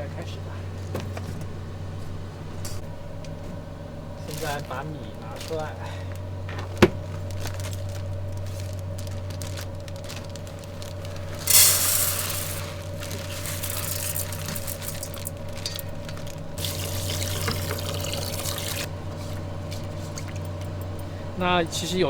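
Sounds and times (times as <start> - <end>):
steady low hum: 0.0 - 22.0
water sloshing rice: 7.3 - 18.9
water pouring into a pot: 11.4 - 18.9.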